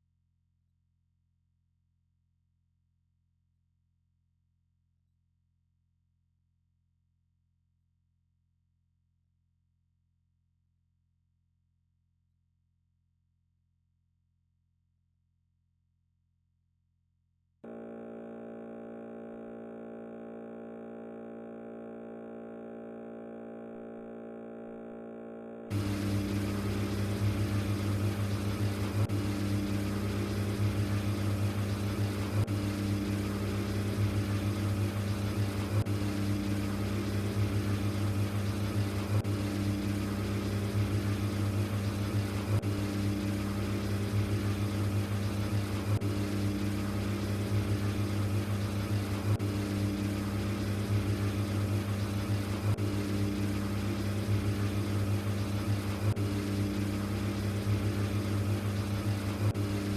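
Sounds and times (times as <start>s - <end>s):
faint pulsing tone: 17.7s - 59.9s
washing machine motor hum: 25.7s - 59.9s.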